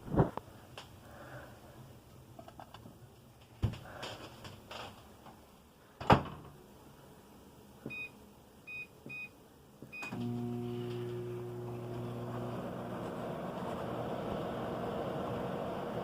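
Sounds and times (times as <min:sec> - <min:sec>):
microwave humming with fan: 0:10.0 - 0:16.0.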